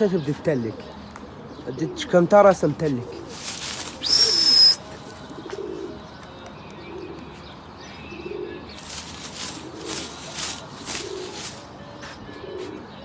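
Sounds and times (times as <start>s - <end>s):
pigeons cooing: 0.0s - 13.0s
loud hiss with whistling tone: 3.8s - 4.8s.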